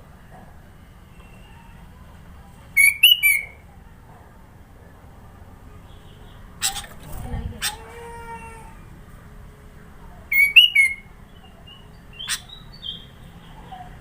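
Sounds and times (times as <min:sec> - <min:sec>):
low background hum: 0:00.0 - 0:14.0
bird whistling: 0:02.8 - 0:03.6, 0:10.3 - 0:11.1, 0:11.7 - 0:13.1.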